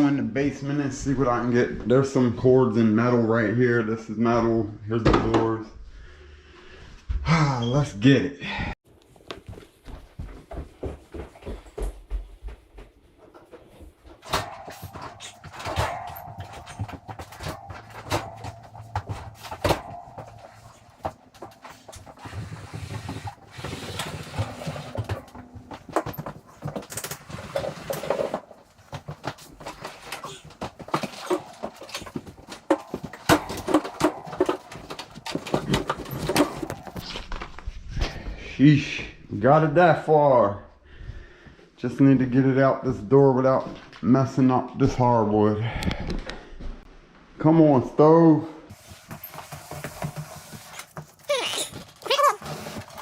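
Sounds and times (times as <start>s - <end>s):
stove dragging across floor: 20.5s - 26.2s.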